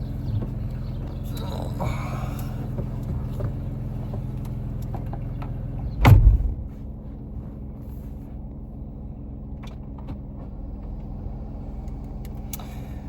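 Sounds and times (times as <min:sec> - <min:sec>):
car engine idling: 0:00.0 - 0:13.0
loud heavy thump: 0:06.0 - 0:06.9.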